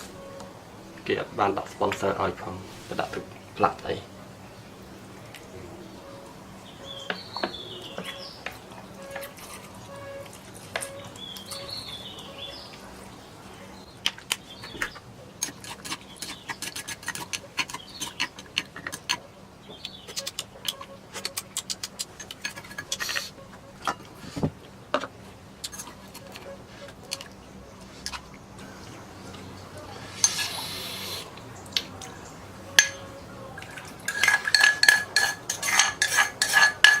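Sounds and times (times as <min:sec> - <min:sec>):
faint steady hum: 0:00.0 - 0:37.0
small birds chirping: 0:04.4 - 0:15.1, 0:15.8 - 0:22.2, 0:26.1 - 0:33.6.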